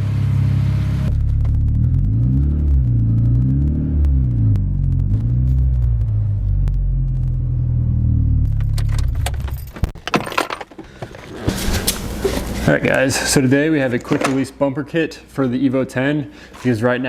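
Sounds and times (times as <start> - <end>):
car engine revving: 0.0 - 10.0
sharp clicks and rattles: 1.1 - 7.5, 8.4 - 12.5.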